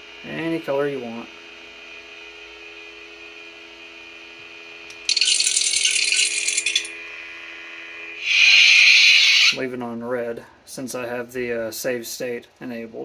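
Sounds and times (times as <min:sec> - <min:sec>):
lightsaber hum: 0:05.0 - 0:07.0, 0:08.2 - 0:09.6
loud harsh hissing effect: 0:08.2 - 0:09.6.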